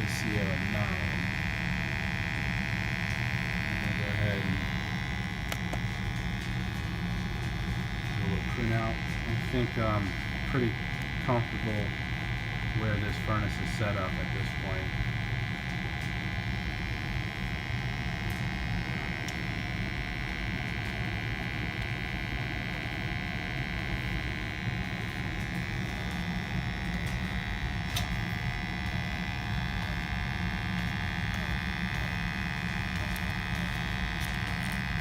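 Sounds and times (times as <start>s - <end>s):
gas furnace humming: 0.0s - 35.0s.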